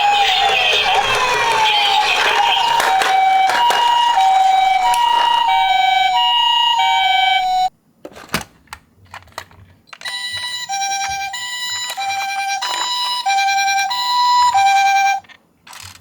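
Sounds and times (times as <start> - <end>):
clicks and knock: 0.0 - 6.1, 11.8 - 13.2
toy two-tone siren: 0.0 - 7.7, 10.0 - 15.3.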